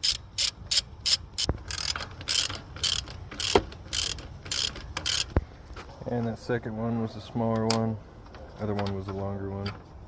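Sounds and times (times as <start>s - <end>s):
ratchet wrench rasping: 0.0s - 5.4s.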